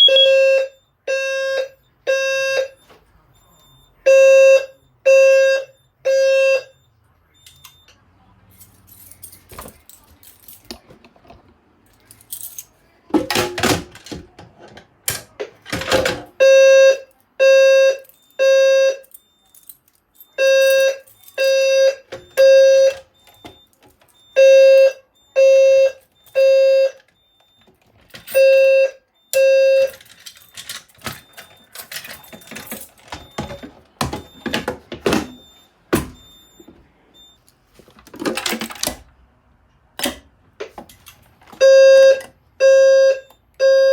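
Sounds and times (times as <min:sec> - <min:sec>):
low-pitched fire alarm horn blasts: 0:00.0 - 0:02.9, 0:03.5 - 0:06.8, 0:16.4 - 0:19.5, 0:20.4 - 0:23.6, 0:24.2 - 0:27.7, 0:28.3 - 0:30.0, 0:41.6 - 0:43.9.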